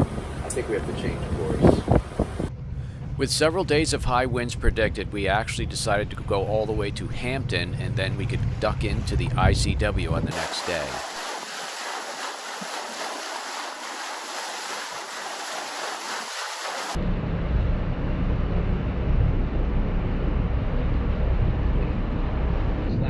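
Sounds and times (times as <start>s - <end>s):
wind hiss: 0.0s - 3.2s, 9.2s - 17.0s
boat engines rumbling: 0.0s - 17.0s
water rushing: 0.0s - 17.0s.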